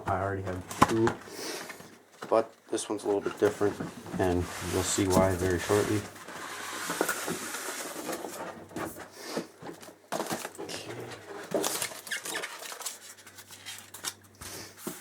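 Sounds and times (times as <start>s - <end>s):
packaging rustling and knocking: 0.0s - 2.4s, 3.4s - 15.0s.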